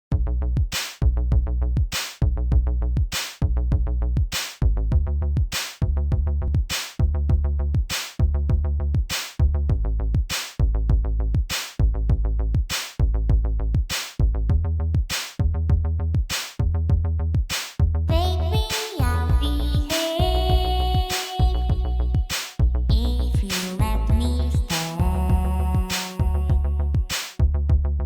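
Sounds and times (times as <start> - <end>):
heavy synth bass line: 0.2 - 28.0.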